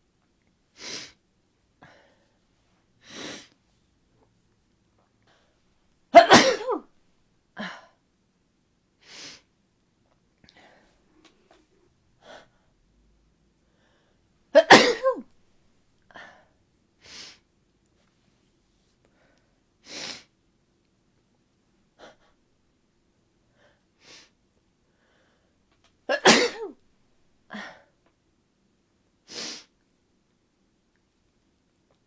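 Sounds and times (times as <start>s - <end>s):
woman sneezing: 6.2s - 6.8s, 14.6s - 15.2s, 26.1s - 26.8s.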